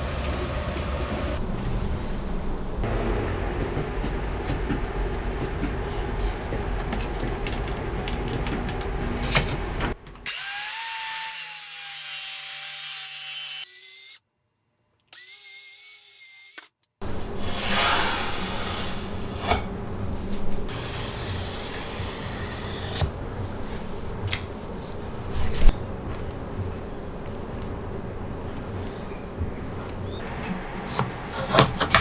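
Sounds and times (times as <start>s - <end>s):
power tool cutting wood: 10.2s - 14.2s, 20.7s - 23.1s.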